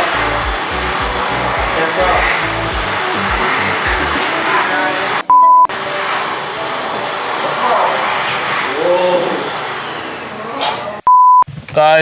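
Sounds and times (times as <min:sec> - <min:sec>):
music with bass beat: 0:00.0 - 0:04.4
steady rushing noise: 0:00.0 - 0:09.6.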